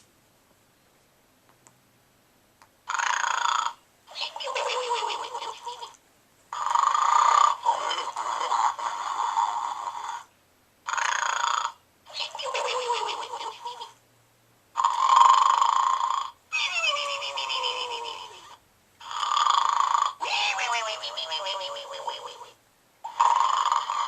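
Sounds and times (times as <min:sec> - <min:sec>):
electronic toy snoring: 0:02.9 - 0:05.8, 0:06.5 - 0:10.3, 0:10.9 - 0:13.9, 0:14.8 - 0:24.0.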